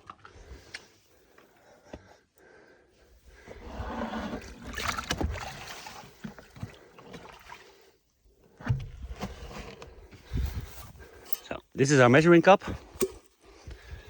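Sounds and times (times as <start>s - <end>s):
water splashing and gurgling: 4.0s - 8.0s.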